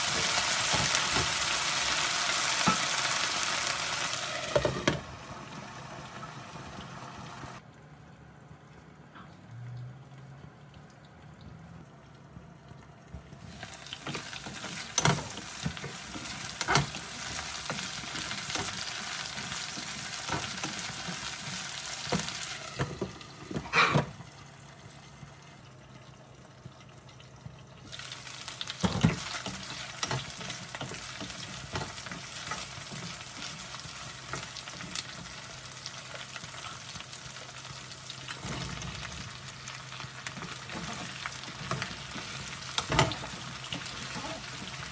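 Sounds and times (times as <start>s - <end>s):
food sizzling in hot oil: 0.0s - 7.6s, 13.5s - 25.4s, 27.8s - 44.9s.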